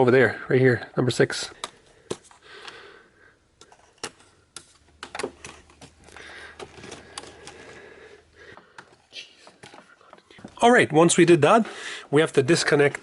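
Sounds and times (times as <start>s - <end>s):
plastic clicks: 3.6s - 7.8s.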